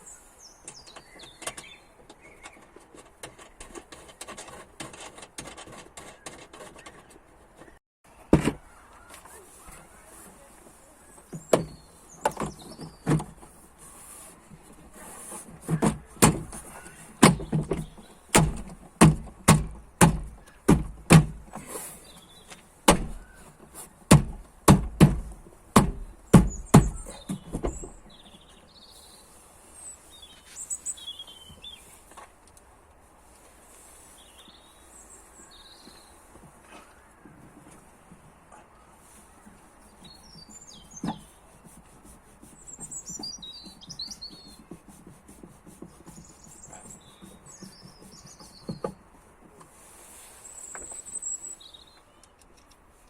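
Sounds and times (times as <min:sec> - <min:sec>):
trim panel knocks and thumps: 0:15.6 - 0:21.5, 0:22.9 - 0:23.3, 0:24.1 - 0:28.1.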